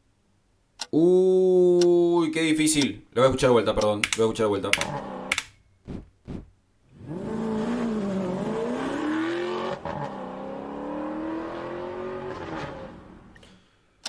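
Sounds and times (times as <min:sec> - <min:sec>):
car engine accelerating hard: 0:07.0 - 0:13.3.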